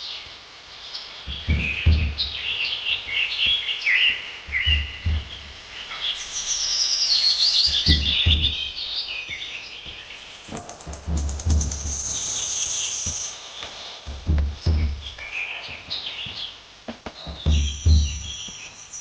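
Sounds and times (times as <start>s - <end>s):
birds chirping: 0.8s - 19.0s
low dull thumps: 1.3s - 3.6s, 4.4s - 6.8s, 7.6s - 10.0s, 10.8s - 13.3s, 14.0s - 18.5s.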